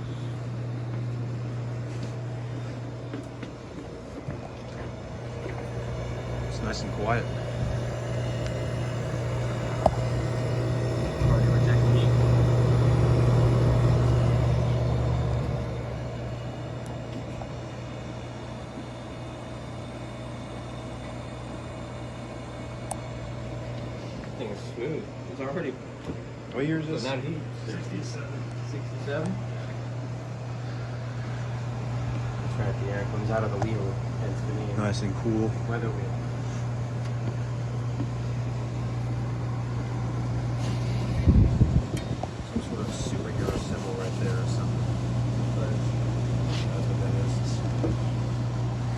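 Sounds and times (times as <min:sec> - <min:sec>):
window air conditioner hum: 0:00.0 - 0:48.9
rush of air from blower: 0:05.2 - 0:20.5, 0:40.4 - 0:44.7.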